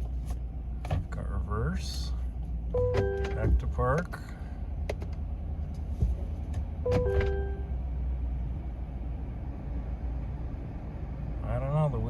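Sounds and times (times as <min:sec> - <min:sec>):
truck engine humming: 0:00.0 - 0:12.0
two-note dashboard chime: 0:06.9 - 0:07.7.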